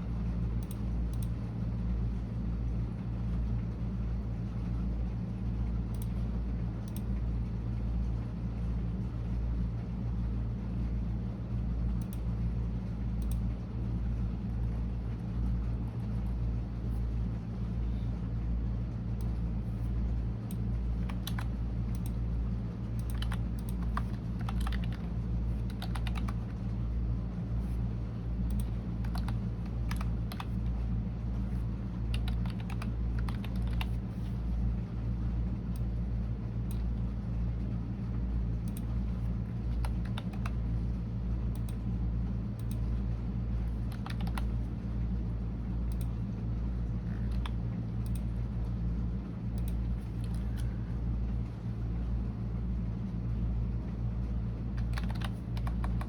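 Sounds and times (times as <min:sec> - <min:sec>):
steady low rumble: 0:00.0 - 0:56.0
keyboard typing: 0:21.0 - 0:22.2, 0:23.0 - 0:26.6, 0:28.4 - 0:30.7, 0:32.1 - 0:34.4, 0:39.7 - 0:40.6, 0:43.7 - 0:44.6, 0:47.2 - 0:48.3, 0:54.8 - 0:56.0.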